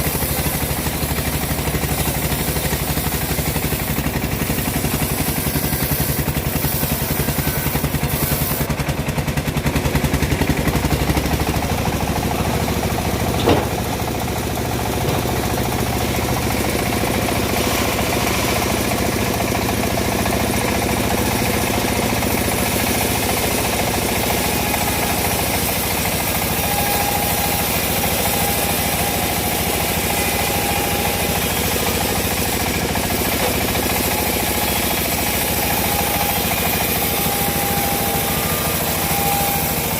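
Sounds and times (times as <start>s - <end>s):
sawmill engine running: 0.0s - 39.9s
sharp knock: 13.4s - 13.8s.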